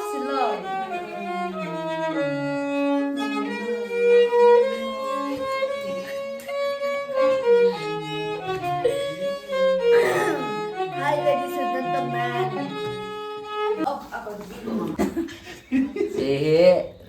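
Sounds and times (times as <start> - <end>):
bowed string music: 0.0 - 13.9.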